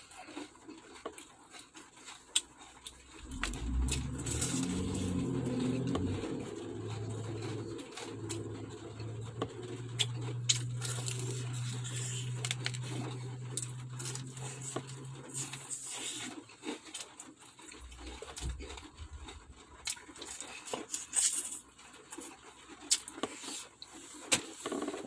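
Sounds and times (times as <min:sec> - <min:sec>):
person eating crispy chicken: 0:00.0 - 0:25.0
low steady hum: 0:02.9 - 0:21.6.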